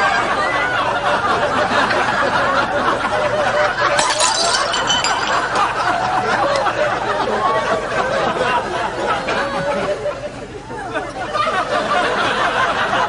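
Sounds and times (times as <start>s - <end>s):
high clink: 4.0s - 6.3s.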